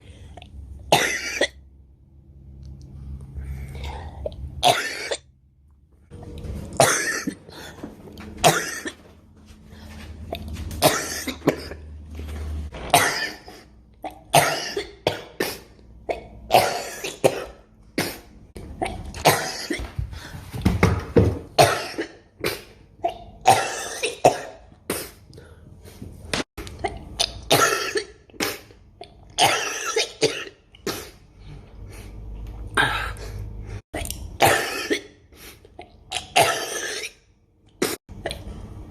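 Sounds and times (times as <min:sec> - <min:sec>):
low background hum: 0:00.0 - 0:20.4, 0:22.9 - 0:38.9
person coughing: 0:00.9 - 0:01.6, 0:04.6 - 0:05.3, 0:06.8 - 0:07.8, 0:08.4 - 0:09.1, 0:10.8 - 0:11.9, 0:12.9 - 0:13.6, 0:14.3 - 0:18.2, 0:21.6 - 0:25.1, 0:34.4 - 0:35.2.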